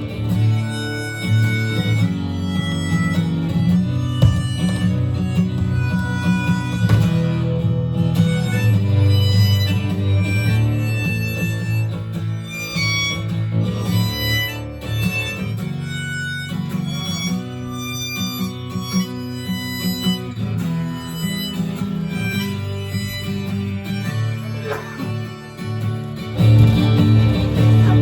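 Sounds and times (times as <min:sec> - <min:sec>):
bass: 0:00.0 - 0:28.0
harmonica melody: 0:00.0 - 0:28.0
strummed acoustic guitar: 0:00.0 - 0:28.0
short sliding tone: 0:24.6 - 0:25.3.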